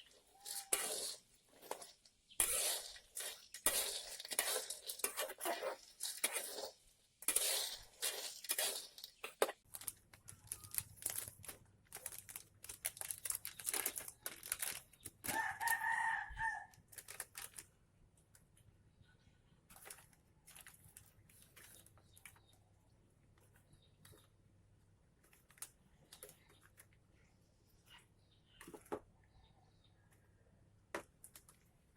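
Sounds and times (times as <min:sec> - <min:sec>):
sharp clicks and rustles: 0:07.3 - 0:15.9.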